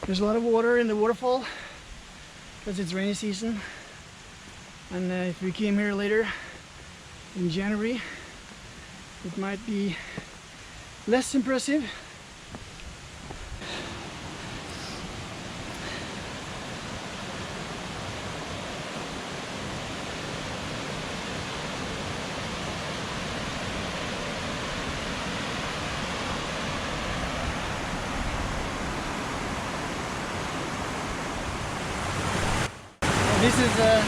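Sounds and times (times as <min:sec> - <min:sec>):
waterfall rushing: 0:13.6 - 0:34.0.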